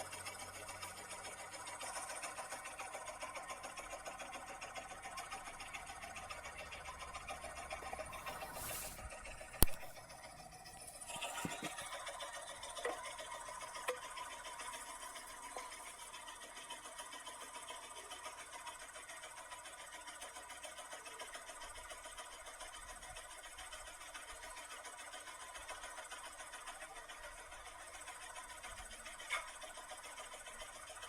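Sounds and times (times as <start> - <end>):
scroll saw clattering: 10.7 - 12.0.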